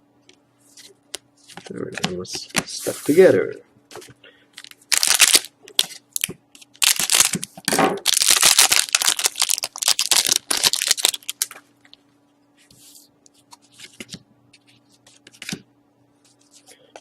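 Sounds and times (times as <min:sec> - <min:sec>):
cards rustling: 0:00.7 - 0:11.6
wrapper tearing and crinkling: 0:04.6 - 0:11.6.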